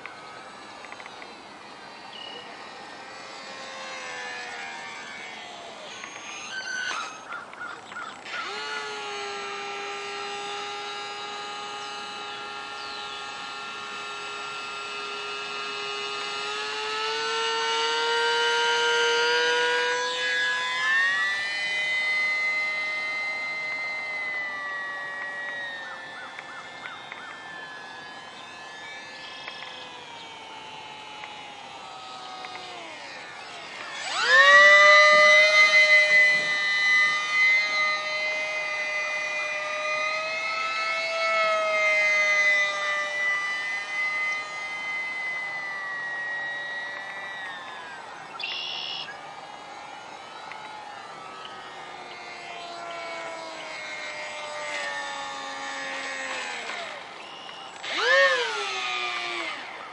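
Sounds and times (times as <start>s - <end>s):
small electric motor and propeller whining: 0.0s - 59.9s.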